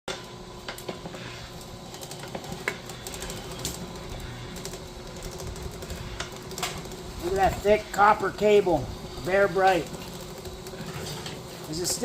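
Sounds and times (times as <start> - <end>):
copper cable clicking and knocking: 1.9 - 7.7.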